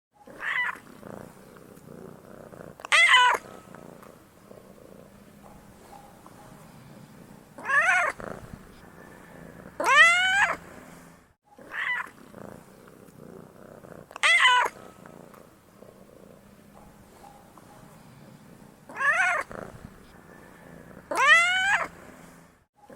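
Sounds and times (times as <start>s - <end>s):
cat purring: 0.3s - 22.5s
cat meowing: 0.4s - 0.8s, 2.9s - 3.4s, 7.6s - 8.2s, 9.8s - 10.6s, 11.7s - 12.1s, 14.2s - 14.8s, 18.9s - 19.5s, 21.1s - 21.9s.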